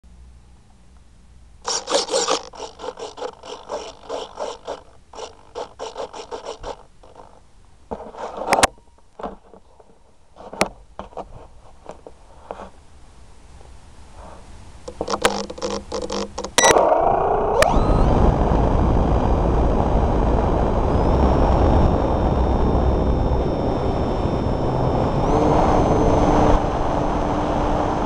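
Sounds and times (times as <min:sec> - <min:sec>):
scraping and clicking: 0:01.7 - 0:12.7, 0:14.9 - 0:16.8
handling noise on microphone: 0:01.7 - 0:12.8, 0:13.6 - 0:16.6.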